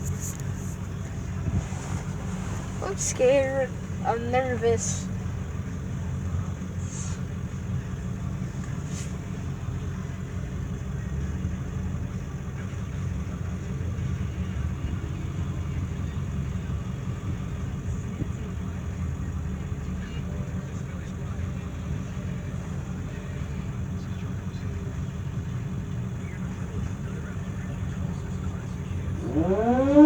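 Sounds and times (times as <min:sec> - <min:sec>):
steady low rumble: 0:00.0 - 0:14.6.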